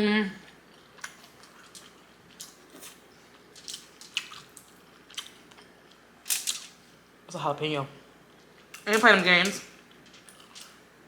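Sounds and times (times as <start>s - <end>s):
person chewing food: 0.5s - 6.0s, 9.9s - 10.8s.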